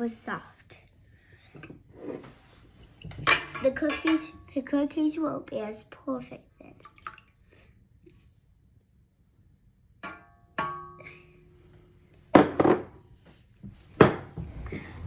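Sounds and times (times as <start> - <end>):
dishes clinking: 3.1 - 4.4, 12.4 - 12.9.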